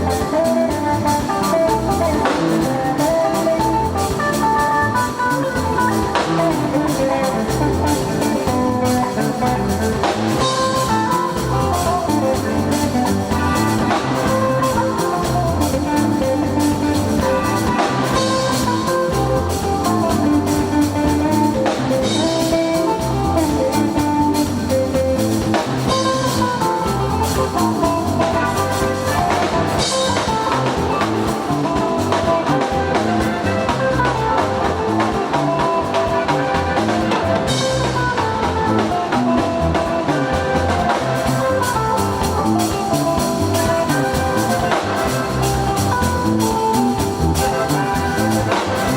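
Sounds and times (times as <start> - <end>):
drums beat: 0.0 - 48.9
guitar: 0.0 - 48.9
instrumental band music: 0.0 - 48.9.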